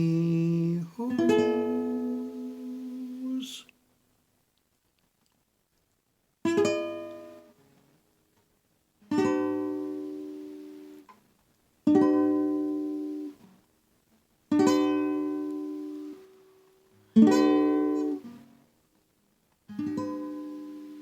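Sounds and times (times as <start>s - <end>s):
slow guitar chords ringing: 0.0s - 3.6s.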